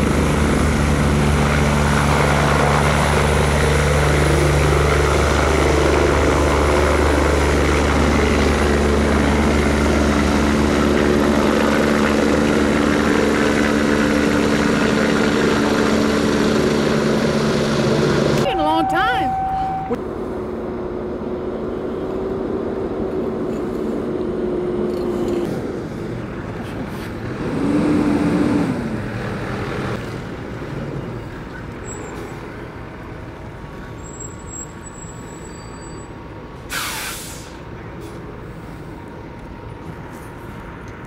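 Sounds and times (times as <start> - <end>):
heavy vehicle engines running: 0.0 - 41.0
hissing air burst: 36.7 - 37.7.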